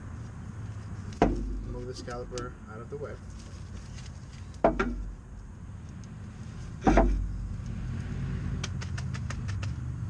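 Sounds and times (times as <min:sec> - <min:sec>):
heavy metallic clunk: 0:04.6 - 0:05.2, 0:06.8 - 0:07.3.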